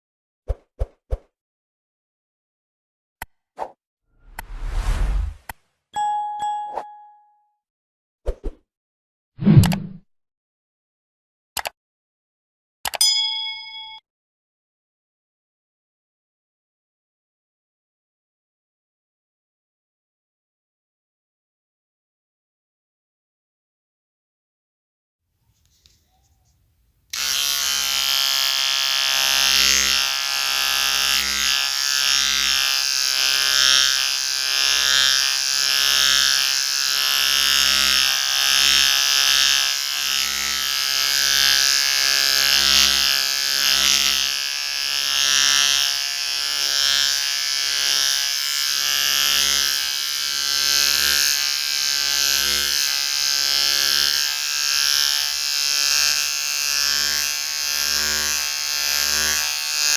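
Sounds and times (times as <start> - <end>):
electric shaver buzzing: 27.1 - 59.9.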